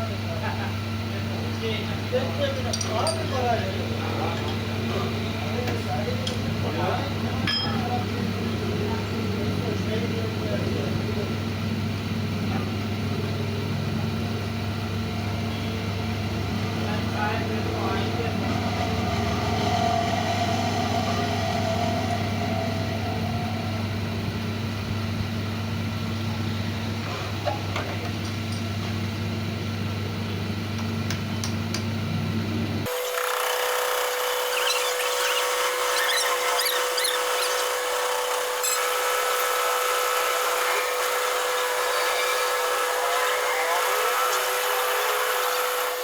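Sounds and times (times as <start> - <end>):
lathe running: 0.1 - 27.5, 32.8 - 46.0
cutting tool scratching metal: 32.9 - 46.0.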